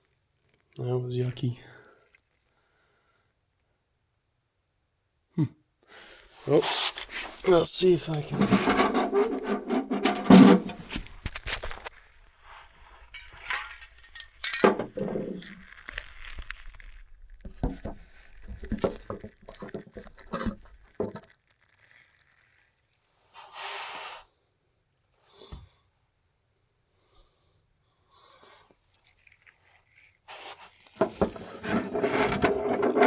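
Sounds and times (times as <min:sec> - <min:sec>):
short hiss: 0:05.9 - 0:07.6, 0:23.2 - 0:24.4
scraping and rubbing on machinery: 0:06.3 - 0:22.1, 0:29.4 - 0:33.0.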